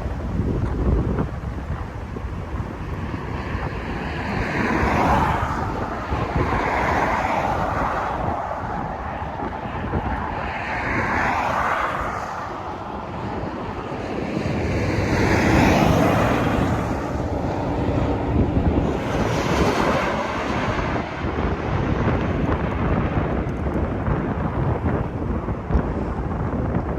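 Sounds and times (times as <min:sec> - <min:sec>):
jet engines passing: 0:00.0 - 0:26.9
wind buffeting microphone: 0:00.0 - 0:26.9.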